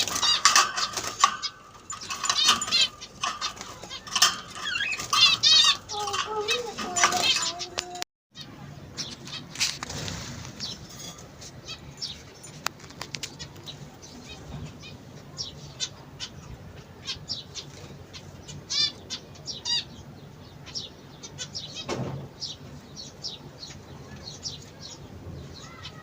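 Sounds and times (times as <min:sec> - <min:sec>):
wings flapping: 0:00.0 - 0:08.0
birds chirping: 0:00.0 - 0:26.0.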